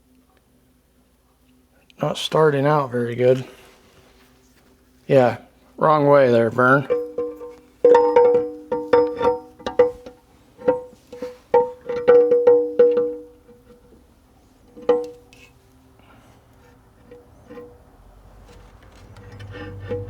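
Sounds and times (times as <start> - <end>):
metal-on-metal taps: 6.9 - 13.8, 14.7 - 15.5.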